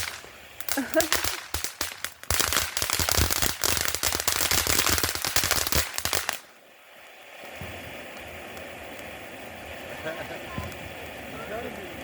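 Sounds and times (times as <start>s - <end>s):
firework crackling bangs: 0.0s - 6.6s, 7.4s - 9.2s.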